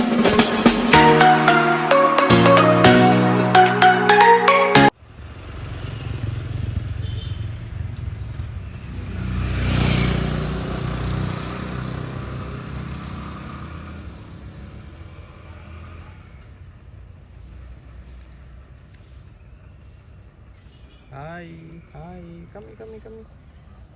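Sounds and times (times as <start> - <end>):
vehicle engine passing by: 5.0 - 18.3.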